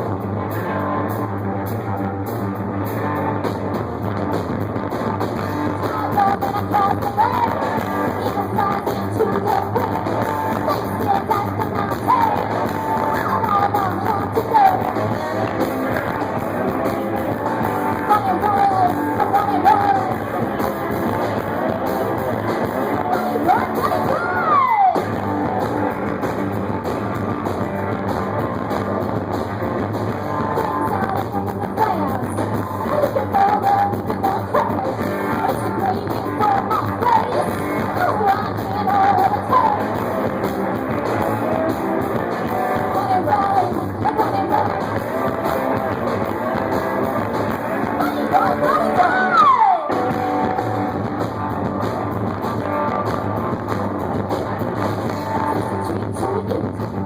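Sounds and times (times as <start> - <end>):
rock band playing: 0.0 - 57.0
person singing: 5.4 - 25.6, 30.1 - 51.0, 55.0 - 57.0.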